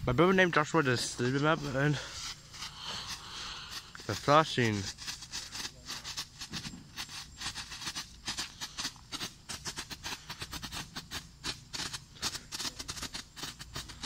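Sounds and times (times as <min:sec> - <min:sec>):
fireworks crackling: 0:00.0 - 0:14.0.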